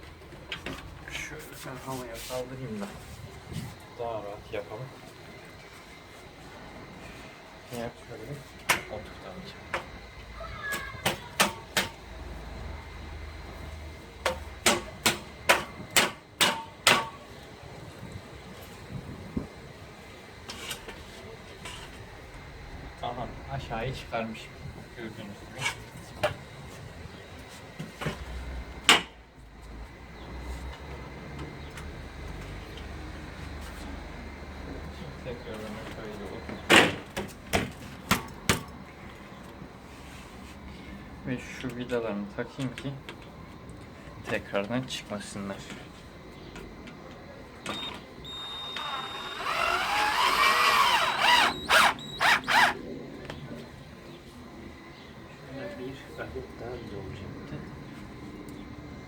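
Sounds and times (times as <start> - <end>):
cordless drill motor whining: 47.8 - 52.8
drill trigger bursts: 48.3 - 52.8.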